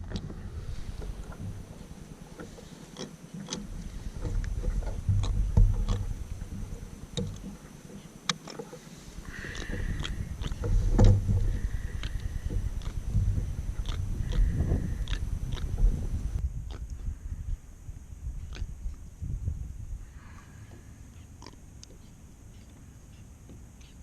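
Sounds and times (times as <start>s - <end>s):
wind on microphone: 0.0s - 2.7s, 3.4s - 7.7s, 9.1s - 21.0s
gear clicking against kayak: 0.0s - 17.1s.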